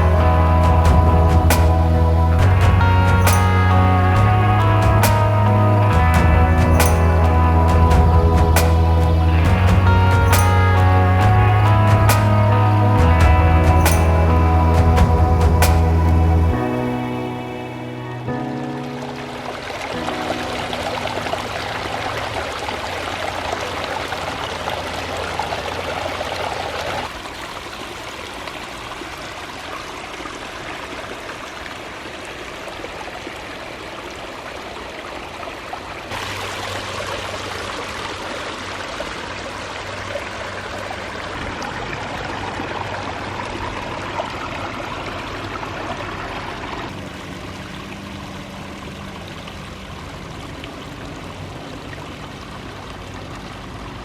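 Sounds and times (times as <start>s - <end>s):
water splashing down a waterfall: 18.4s - 54.0s.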